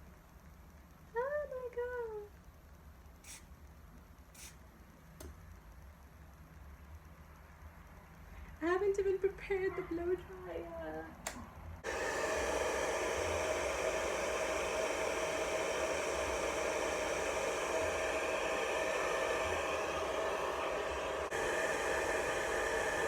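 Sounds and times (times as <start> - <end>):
hair dryer running: 11.8 - 23.0.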